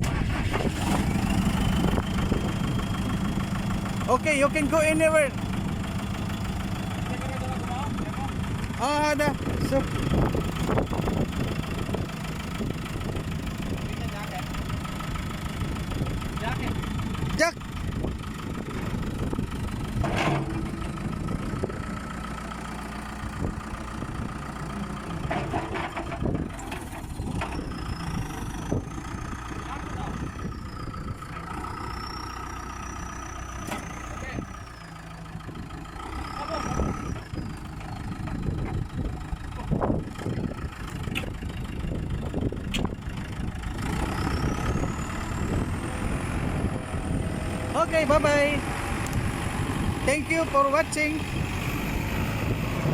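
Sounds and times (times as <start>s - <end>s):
diesel engine idling: 0.0s - 52.9s
knocks and clatters: 20.0s - 21.0s, 25.2s - 27.6s.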